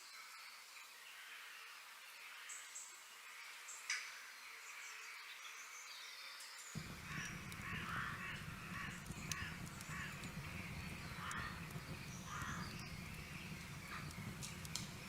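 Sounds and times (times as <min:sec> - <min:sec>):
harsh bird calls: 0:06.8 - 0:15.0
low rumble: 0:06.8 - 0:15.0.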